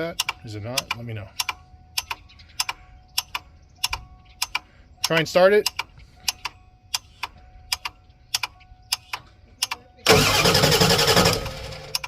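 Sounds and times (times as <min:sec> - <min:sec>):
starter motor cranking engine: 0:10.1 - 0:12.0.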